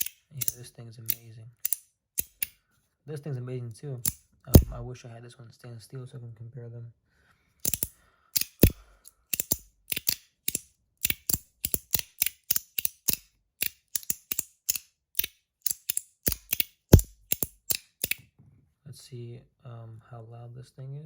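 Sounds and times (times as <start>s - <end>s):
metal slider fidget clicking: 0.0s - 2.6s, 7.6s - 18.2s.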